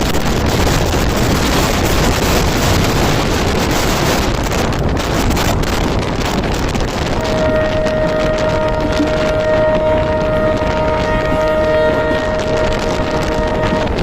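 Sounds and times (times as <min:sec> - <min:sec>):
train passing at speed: 0:00.0 - 0:14.0
wind buffeting microphone: 0:00.0 - 0:14.0.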